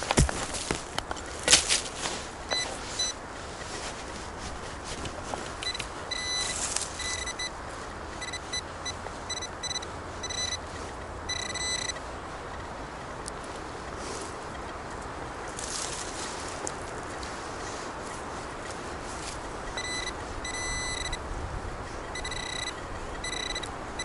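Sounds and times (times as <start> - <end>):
rustle: 0.0 - 24.0
metal detector beeping: 2.5 - 4.0, 5.6 - 12.7, 19.6 - 21.2, 21.9 - 24.0.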